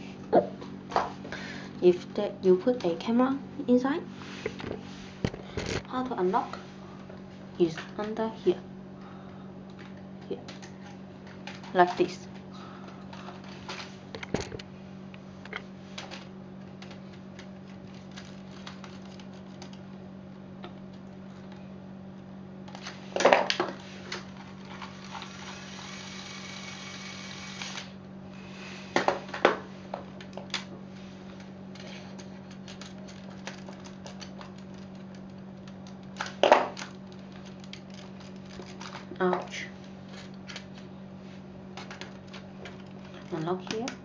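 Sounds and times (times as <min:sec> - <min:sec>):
steady low hum: 0:00.0 - 0:44.0
plastic parts clicking and rattling: 0:15.5 - 0:19.8, 0:31.8 - 0:40.8.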